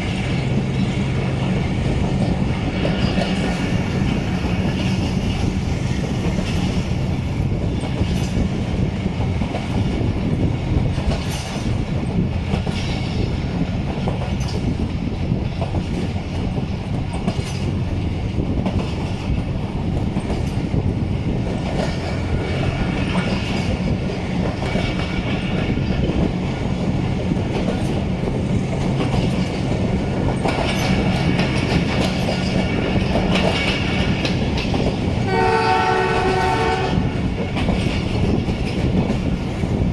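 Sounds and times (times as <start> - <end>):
low train rumble: 0.0 - 39.9
train wheels clattering over rail joints: 0.0 - 39.9.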